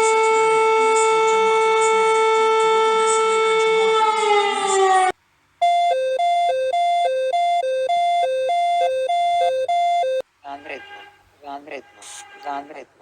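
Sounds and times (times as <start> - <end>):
buzzy siren-like alarm tone: 0.0 - 10.2
two-tone high-low alert: 5.6 - 10.2.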